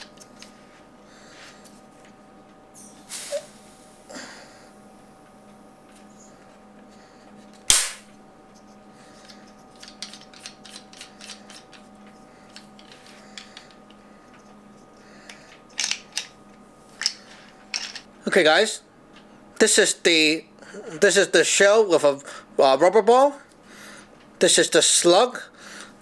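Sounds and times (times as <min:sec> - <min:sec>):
sharp burst of gas: 0:03.1 - 0:04.0, 0:07.7 - 0:08.1
plastic shells clicking: 0:09.8 - 0:11.8.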